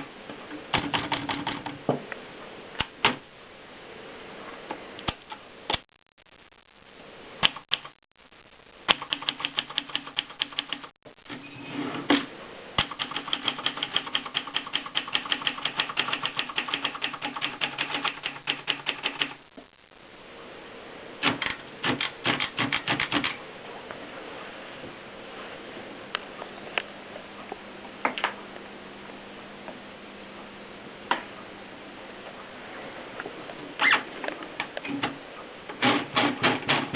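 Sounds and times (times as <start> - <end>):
typewriter keys clacking: 0.7 - 1.8, 8.9 - 10.9, 12.8 - 19.4, 21.2 - 23.4.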